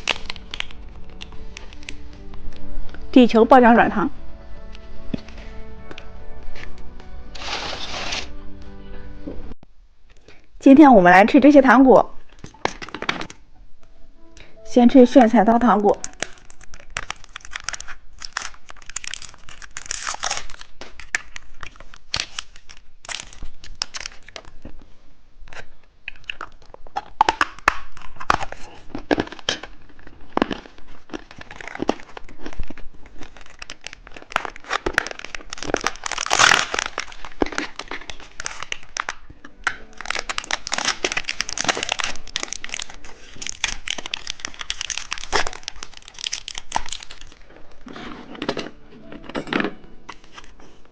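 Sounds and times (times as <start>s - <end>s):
plastic wrapper crinkling and tearing: 0.0s - 3.0s, 4.6s - 8.3s, 15.9s - 24.8s, 25.4s - 48.7s, 50.0s - 50.9s.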